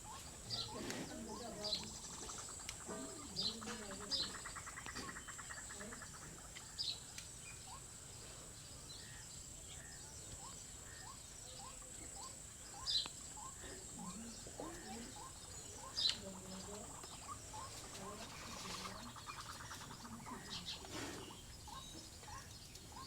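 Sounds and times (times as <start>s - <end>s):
birds chirping: 0.0s - 23.0s.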